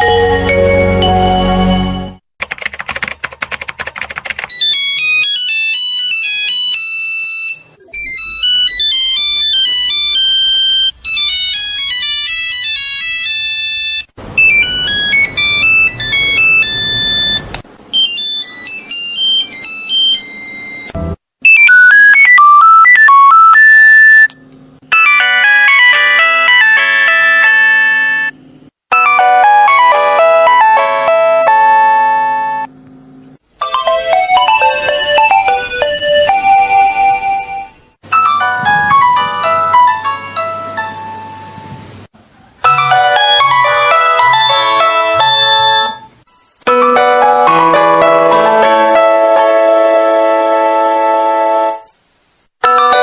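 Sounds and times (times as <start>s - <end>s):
mobile phone ringtones: 4.5s - 24.3s, 33.6s - 40.8s, 42.6s - 46.1s.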